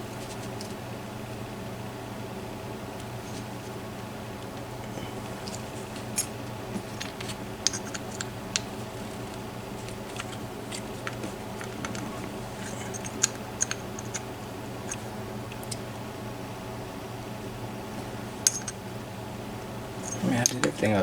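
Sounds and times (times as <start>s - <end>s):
steady low hum: 0.0s - 21.0s
small tools clicking on metal: 12.7s - 14.3s, 18.5s - 18.8s.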